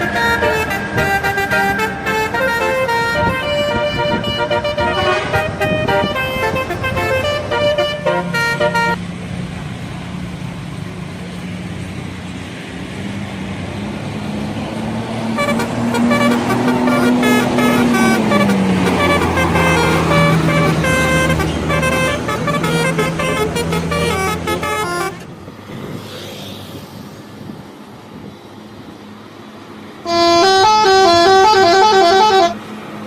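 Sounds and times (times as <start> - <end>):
bus horn playing a tune: 0.0 - 9.0, 15.3 - 25.4, 30.0 - 32.8
road noise: 0.0 - 33.0.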